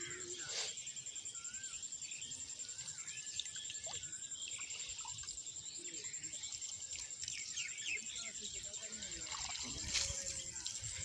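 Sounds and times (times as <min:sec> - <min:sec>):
insect high-pitched pulsing trill: 0:00.0 - 0:11.0
small birds chirping: 0:00.0 - 0:11.0.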